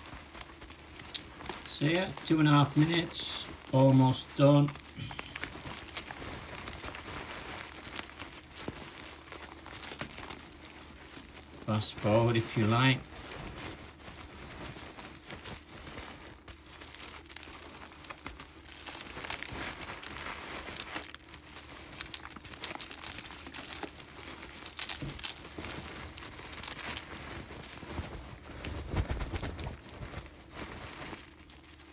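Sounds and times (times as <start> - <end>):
cloth bag rustling and crinkling: 0.0 - 31.9
dirt scraped out of bag: 0.7 - 7.0.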